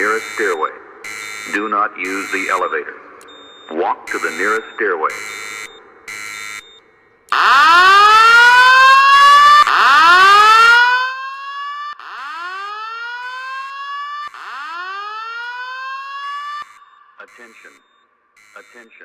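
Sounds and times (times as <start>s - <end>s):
buzzy alarm beep: 0.0s - 7.2s, 16.6s - 19.0s
fire alarm rising whoops: 3.5s - 6.7s, 7.3s - 17.8s.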